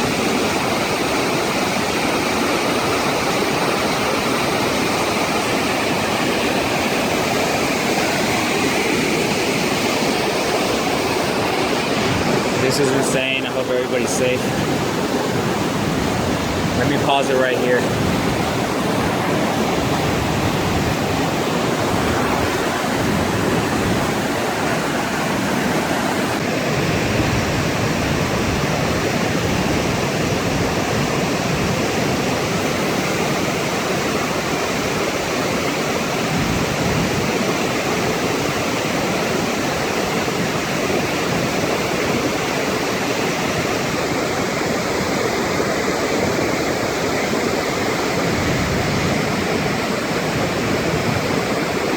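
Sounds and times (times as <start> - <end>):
water rushing over waterfall: 0.0 - 51.9.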